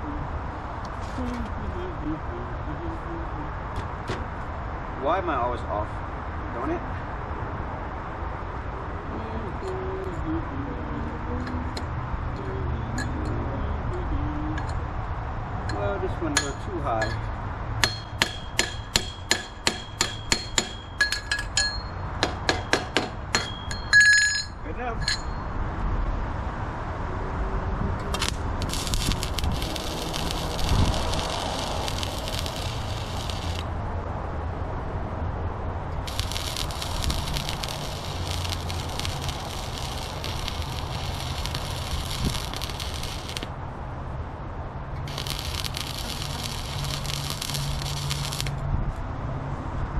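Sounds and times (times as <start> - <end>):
hammer striking metal: 16.4 - 25.4
welder arc crackling: 28.0 - 33.7, 36.0 - 43.6, 45.0 - 48.6
low electrical hum: 28.0 - 34.2, 35.9 - 43.8, 45.1 - 48.6.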